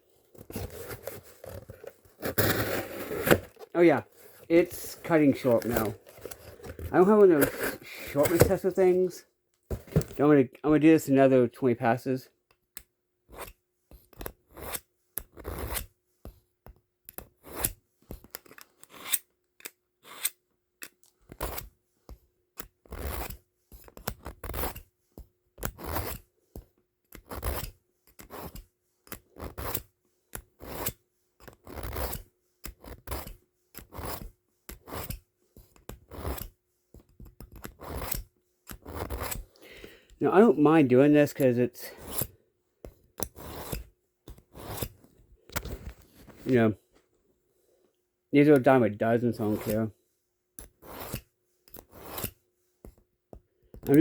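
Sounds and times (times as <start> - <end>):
knife scraping on sharpener: 4.3 - 8.5, 18.5 - 19.3, 20.0 - 20.4, 32.8 - 35.2, 43.2 - 44.9, 49.4 - 49.8, 50.6 - 52.4.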